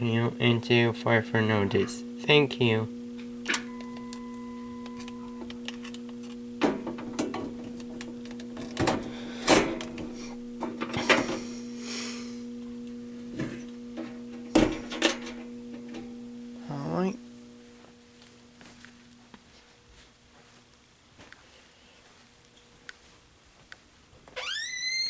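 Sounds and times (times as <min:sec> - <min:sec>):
speaker electrical hum: 0:00.0 - 0:25.0
sharp clicks and knocks: 0:03.2 - 0:11.4, 0:12.8 - 0:16.1.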